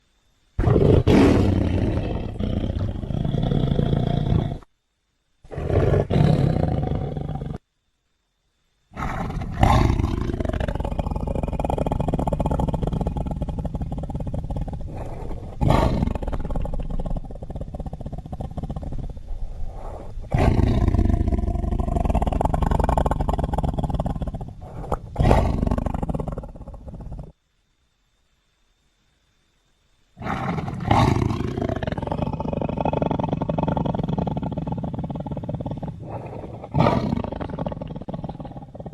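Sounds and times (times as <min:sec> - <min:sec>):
deep rasping creature roars: 0:00.6 - 0:04.6, 0:09.0 - 0:27.3, 0:30.2 - 0:38.9.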